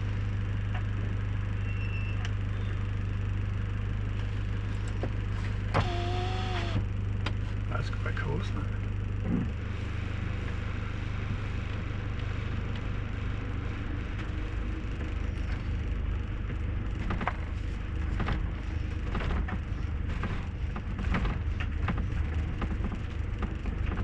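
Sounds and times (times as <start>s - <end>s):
motorhome engine and road rumble: 0.0s - 24.0s.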